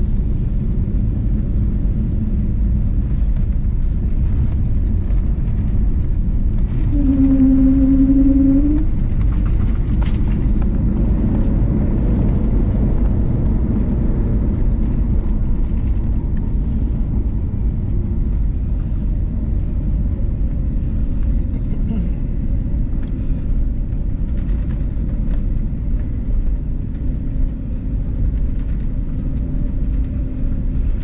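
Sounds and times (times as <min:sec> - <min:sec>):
jet engine cabin rumble: 0:00.0 - 0:31.0
steady hum with overtone: 0:06.3 - 0:10.5.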